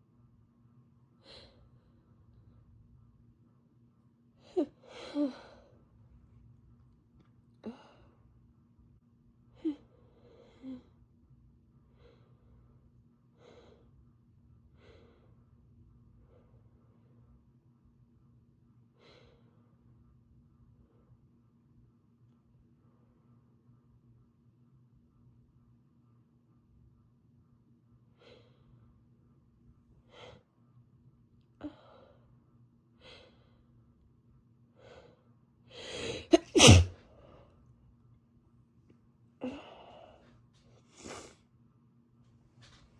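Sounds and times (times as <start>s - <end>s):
woman breathing softly: 34.8s - 36.3s
woman catching breaths: 35.8s - 36.9s
woman gasping: 35.8s - 36.9s
woman sneezing: 36.0s - 36.9s.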